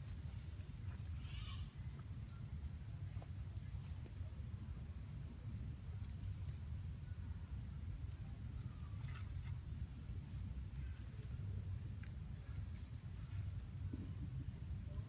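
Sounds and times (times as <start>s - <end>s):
high insect drone: 0.0s - 15.0s
wind rumble on microphone: 0.0s - 15.0s.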